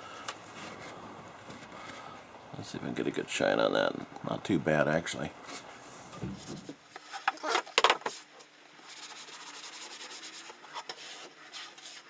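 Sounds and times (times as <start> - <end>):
short scrapes and knocks: 5.5 - 8.3.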